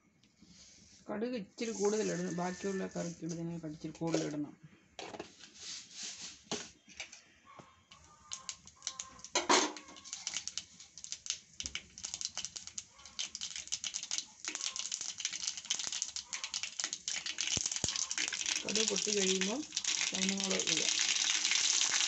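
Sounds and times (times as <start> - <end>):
seeds popping in hot oil: 7.9 - 22.0.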